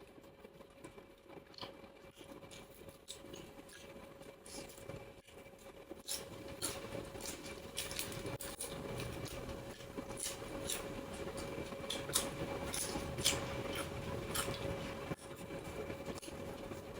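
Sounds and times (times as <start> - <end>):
faint steady hum: 0.0 - 16.9
chewing and mouth clicks: 6.1 - 15.4.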